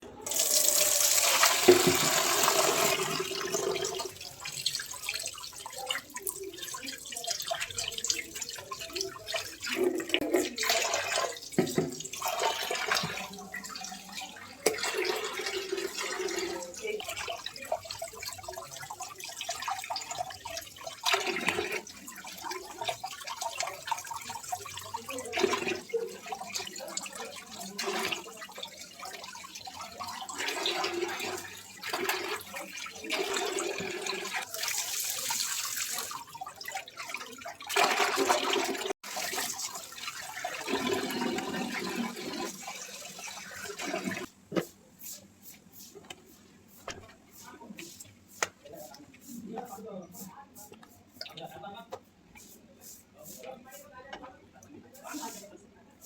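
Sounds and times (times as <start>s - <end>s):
water running and splashing: 0.3s - 44.3s.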